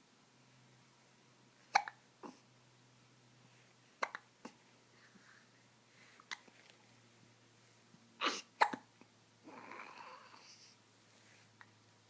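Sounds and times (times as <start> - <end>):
person hiccuping: 1.7 - 2.4, 8.2 - 8.9.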